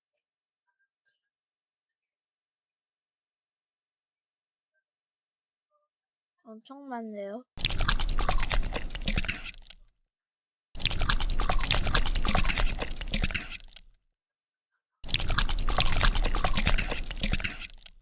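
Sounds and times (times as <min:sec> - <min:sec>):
crunchy eating crackles: 0:07.6 - 0:09.8, 0:10.8 - 0:14.0, 0:15.0 - 0:18.0.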